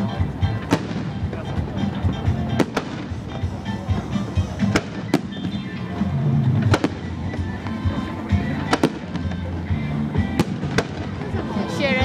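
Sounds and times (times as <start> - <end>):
festival music: 0.0 - 12.0
fireworks bangs: 0.6 - 7.7, 8.6 - 9.6, 10.2 - 11.4.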